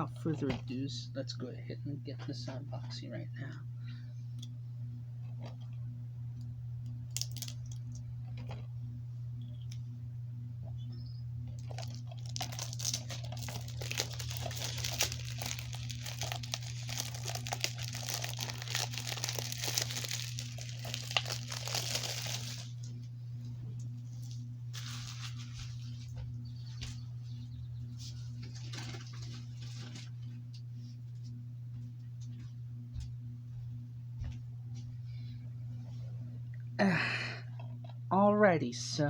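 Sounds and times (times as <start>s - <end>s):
plastic shrink-wrap crinkling: 7.1s - 8.7s, 11.4s - 22.9s, 24.1s - 26.2s.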